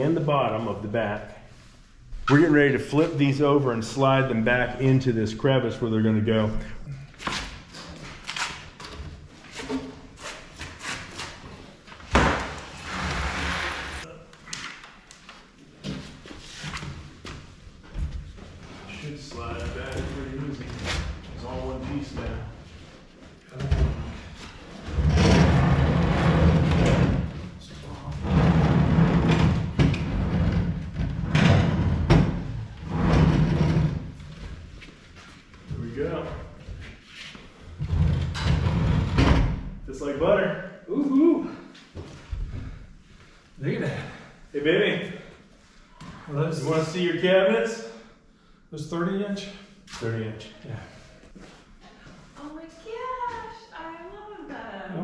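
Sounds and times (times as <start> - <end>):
wooden cabinets knocking and scraping: 28.2 - 34.2.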